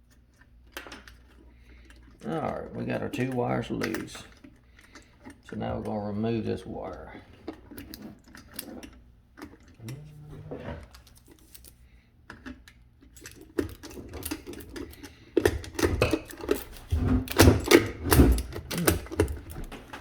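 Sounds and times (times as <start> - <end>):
wire clicking and rattling: 12.3 - 20.0.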